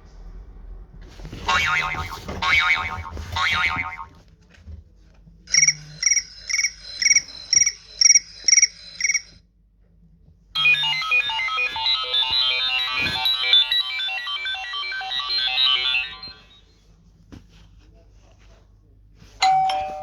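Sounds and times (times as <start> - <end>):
cricket-like chirping ringtone: 5.6 - 9.4
electronic ringtone melody: 10.6 - 16.6.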